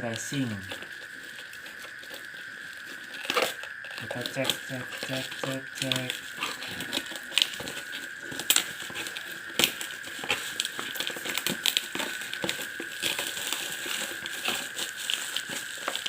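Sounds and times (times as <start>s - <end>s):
steady high-pitched whine: 0.0s - 16.0s
plastic packaging crinkling: 0.1s - 16.0s.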